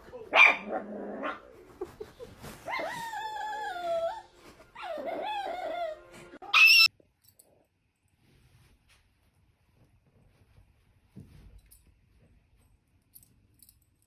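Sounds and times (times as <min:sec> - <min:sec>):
dog whining: 0:02.7 - 0:06.9
dog yelping: 0:04.8 - 0:06.9.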